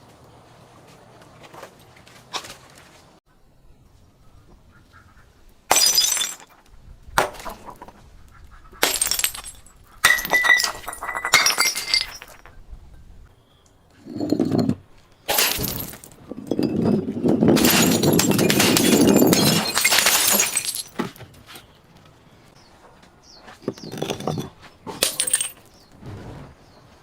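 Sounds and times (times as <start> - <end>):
broken glass crunching: 5.7 - 6.5, 8.8 - 12.4, 15.3 - 21.1, 23.8 - 25.7
glass bottles smashing: 5.7 - 6.5, 8.8 - 12.5, 14.1 - 21.2, 23.8 - 25.7.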